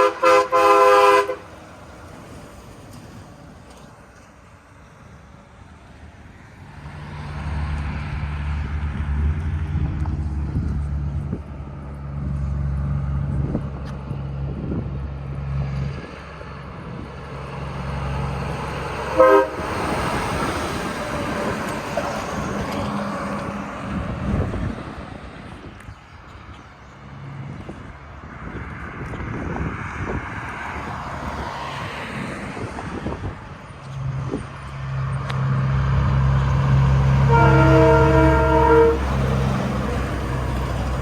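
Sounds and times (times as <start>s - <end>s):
train horn toot: 0.0s - 1.6s, 19.0s - 20.0s, 37.1s - 40.2s
train rolling past: 0.0s - 28.8s, 29.6s - 41.0s
train engine rumble: 0.0s - 41.0s.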